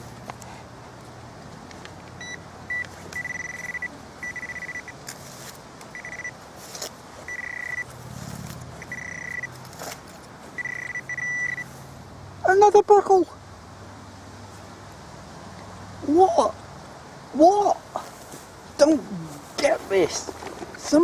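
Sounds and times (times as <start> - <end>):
metal detector beeps: 2.2 - 5.0, 5.9 - 6.4, 7.3 - 7.9, 8.8 - 9.6, 10.6 - 11.7
soil scraping: 4.7 - 10.9, 19.3 - 21.0.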